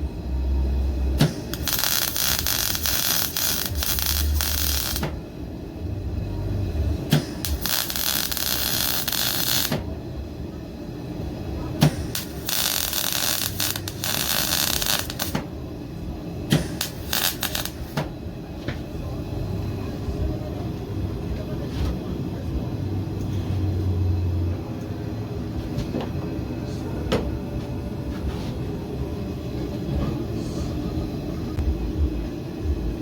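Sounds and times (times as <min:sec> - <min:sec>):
steady low hum: 0:00.0 - 0:33.0
welding arc crackling and sizzling: 0:01.1 - 0:05.2, 0:07.0 - 0:09.8, 0:12.0 - 0:15.4, 0:16.5 - 0:18.0.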